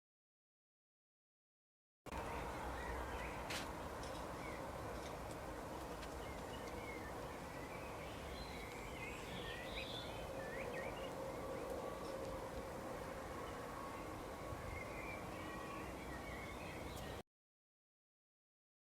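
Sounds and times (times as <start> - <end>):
small birds chirping: 2.1 - 12.6, 13.2 - 17.2.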